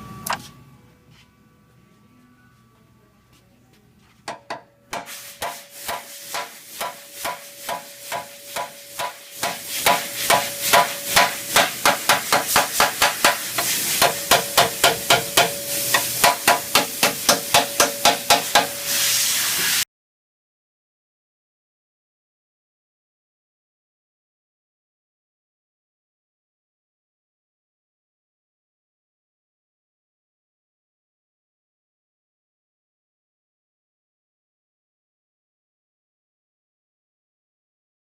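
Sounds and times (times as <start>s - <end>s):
hammer striking steel: 4.3s - 19.0s.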